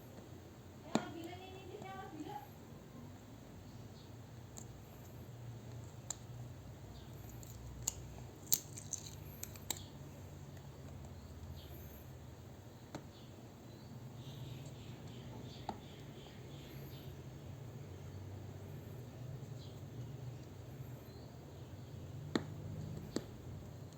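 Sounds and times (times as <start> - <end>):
hands handling small objects: 7.0 - 10.0.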